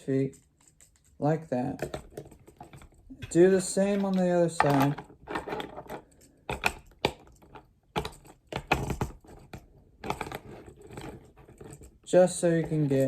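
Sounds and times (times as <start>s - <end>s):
plastic toy parts clicking: 3.2s - 9.2s.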